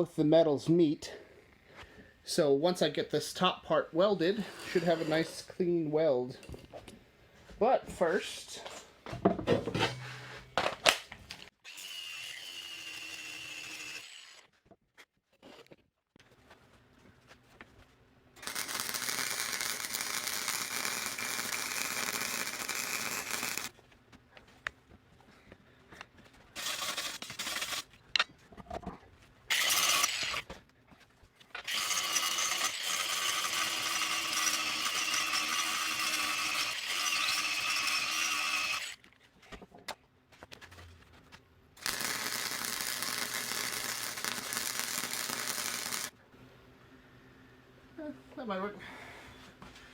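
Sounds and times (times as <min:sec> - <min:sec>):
power tool whining on steel: 0:31.7 - 0:39.0.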